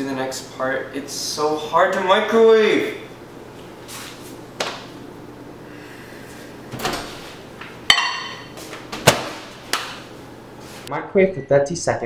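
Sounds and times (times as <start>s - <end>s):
microwave door clicks and knocks: 8.9s - 10.0s.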